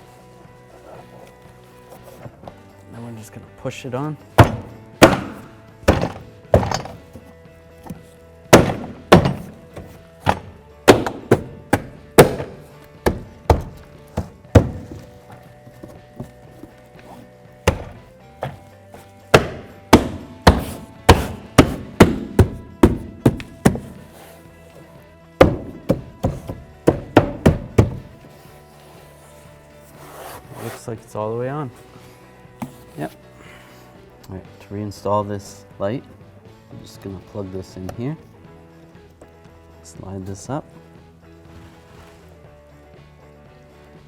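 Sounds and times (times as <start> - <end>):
hand striking door panel thunks: 4.4 - 7.2, 7.8 - 16.7, 17.7 - 24.0, 25.4 - 28.2.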